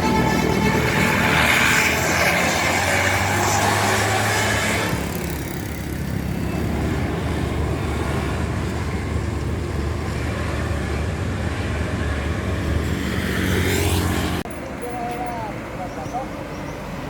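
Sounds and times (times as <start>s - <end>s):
road noise: 0.0s - 17.0s
vehicle engine low rumble: 5.1s - 16.8s.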